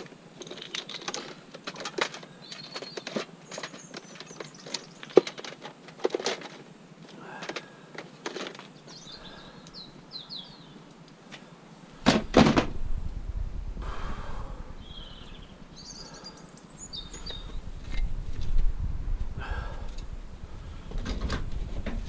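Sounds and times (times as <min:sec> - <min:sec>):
small birds chirping: 0:02.2 - 0:05.6, 0:08.6 - 0:11.1, 0:14.4 - 0:17.8
low rumble: 0:12.6 - 0:15.6.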